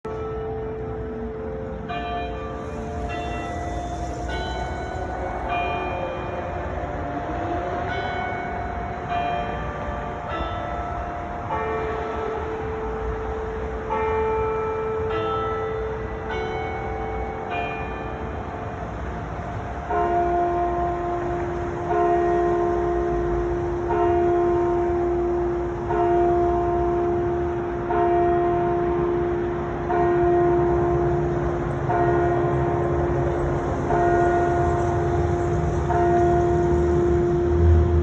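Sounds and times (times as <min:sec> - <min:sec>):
church bell tolling: 0:00.1 - 0:38.0.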